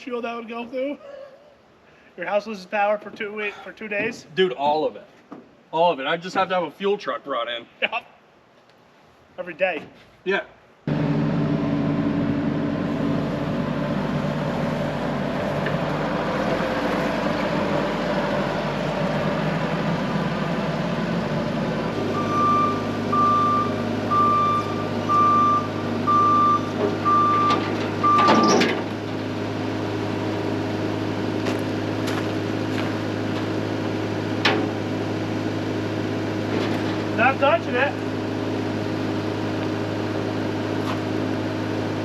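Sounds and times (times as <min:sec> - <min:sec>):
diesel generator engine running: 0:10.9 - 0:42.0.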